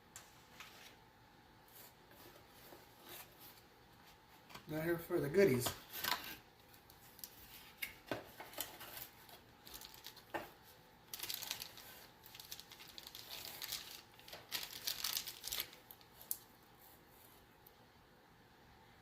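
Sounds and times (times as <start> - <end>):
packaging crinkling and tearing: 6.0 - 16.5.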